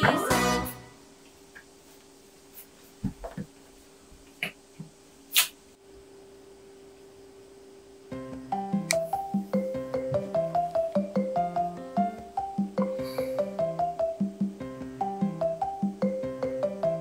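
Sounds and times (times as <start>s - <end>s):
children's song: 0.0s - 1.0s
faint steady hum: 0.0s - 17.0s.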